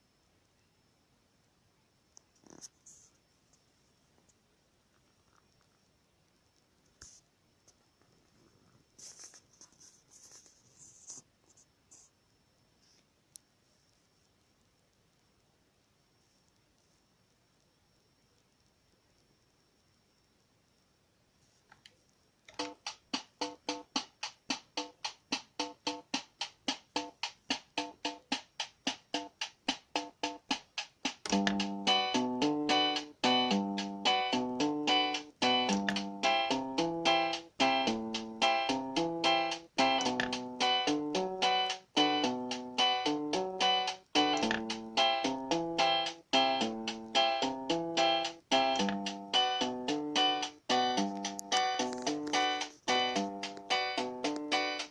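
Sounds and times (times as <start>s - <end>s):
faint high whine: 0.0s - 22.8s
rustling and scraping: 7.0s - 12.1s
keyboard chords and melody: 22.6s - 54.9s.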